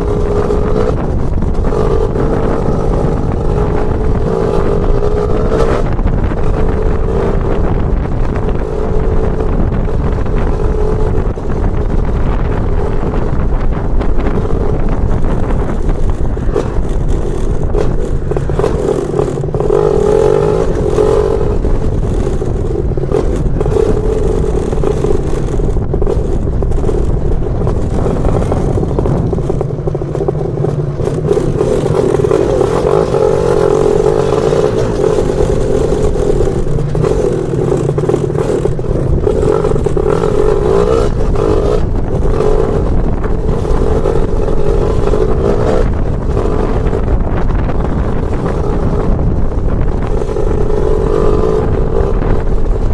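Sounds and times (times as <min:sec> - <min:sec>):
two-stroke scooter engine running: 0:00.0 - 0:52.9.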